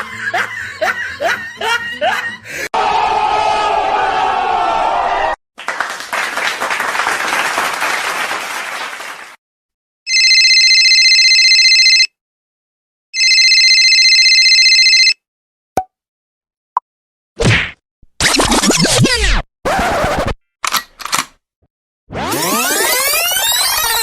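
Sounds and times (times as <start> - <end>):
applause: 5.6 - 9.4
telephone bell ringing: 10.1 - 12.1, 13.2 - 15.2
short click: 20.6 - 21.4.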